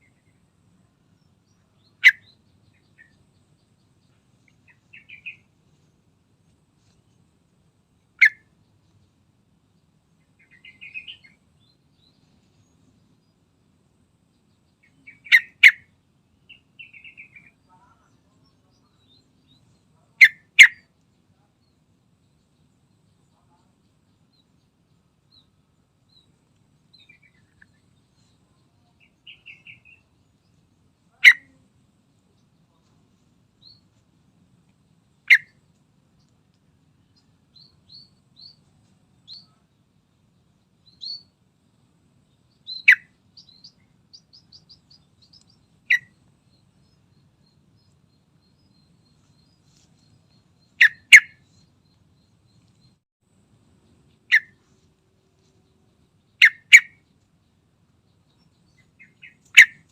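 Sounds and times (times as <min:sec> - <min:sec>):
bird high chirps and twitters: 0:01.8 - 0:03.2, 0:04.7 - 0:05.4, 0:08.2 - 0:08.5, 0:10.4 - 0:11.4, 0:14.8 - 0:15.9, 0:16.5 - 0:18.1, 0:28.9 - 0:30.0, 0:35.3 - 0:35.6, 0:40.9 - 0:41.3, 0:42.6 - 0:46.2, 0:46.8 - 0:51.7, 0:56.3 - 0:57.0, 0:58.3 - 0:59.9.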